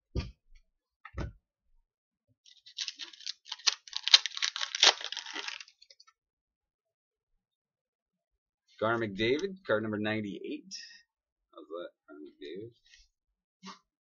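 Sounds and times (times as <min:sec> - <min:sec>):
foil pack tearing and crinkling: 0:02.5 - 0:05.9.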